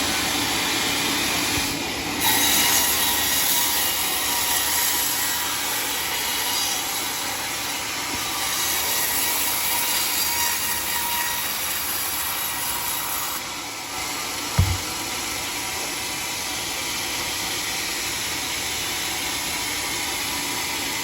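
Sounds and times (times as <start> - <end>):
sawmill blade cutting log: 14.6 - 15.0.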